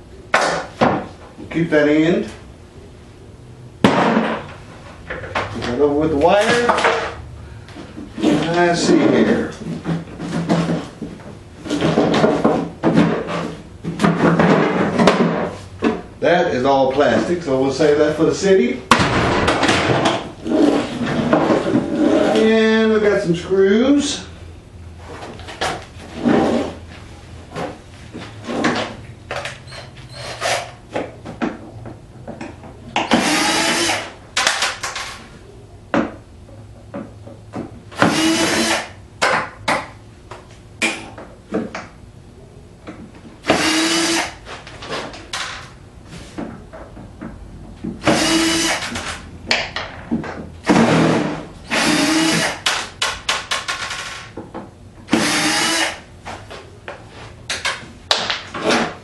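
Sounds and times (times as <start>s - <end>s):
cordless drill motor whining: 33.2s - 34.1s, 38.0s - 38.9s, 43.5s - 44.4s, 48.1s - 49.0s, 51.7s - 52.6s, 55.1s - 56.0s.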